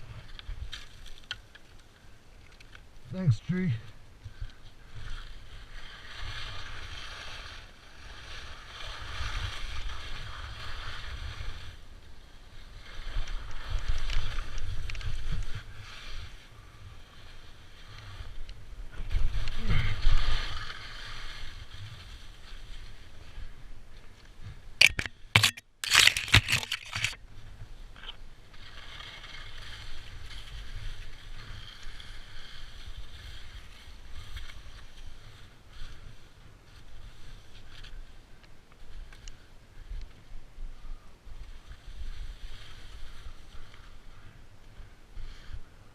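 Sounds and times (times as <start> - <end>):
skis scraping on snow: 4.9 - 18.4, 19.1 - 23.4, 28.6 - 38.2, 41.4 - 43.9.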